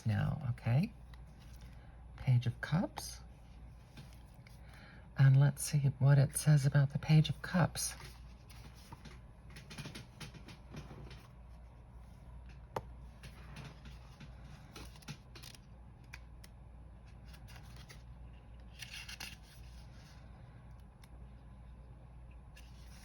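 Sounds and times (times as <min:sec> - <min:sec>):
paper pages rustling: 0:07.9 - 0:11.6, 0:12.5 - 0:20.2, 0:22.6 - 0:23.0.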